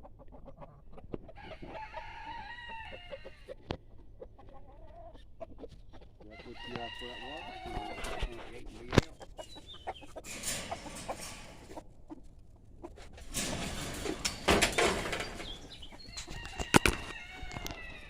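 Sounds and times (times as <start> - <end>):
chickens clucking: 0.0 - 18.0
rustling: 6.7 - 18.0.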